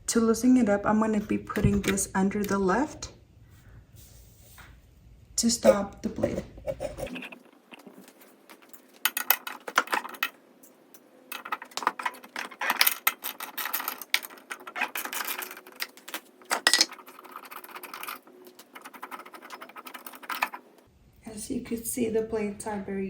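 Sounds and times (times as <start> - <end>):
mower blades being handled: 8.0 - 18.2
wrench clinking on metal: 16.6 - 17.0.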